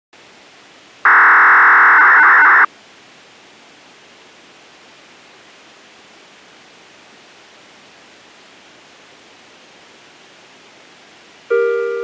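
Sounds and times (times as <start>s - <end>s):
radio hiss: 1.0s - 2.7s
warbling radio signalling tone: 1.1s - 2.7s.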